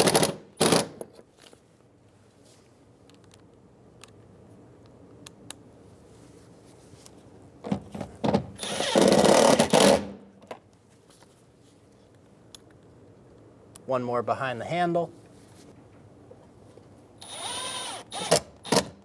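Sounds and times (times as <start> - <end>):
power screwdriver driving screw: 8.6 - 10.0, 17.2 - 19.0.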